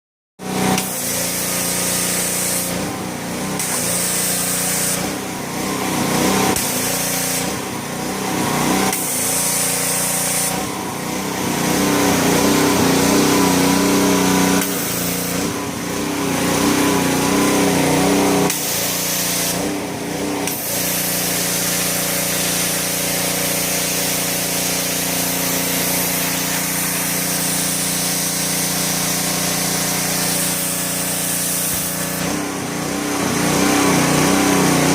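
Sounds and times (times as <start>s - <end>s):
pressure washer motor hum: 0.4s - 34.9s
spray jet hissing: 0.8s - 2.8s, 3.6s - 5.1s, 6.5s - 7.6s, 8.8s - 19.8s, 20.4s - 32.4s.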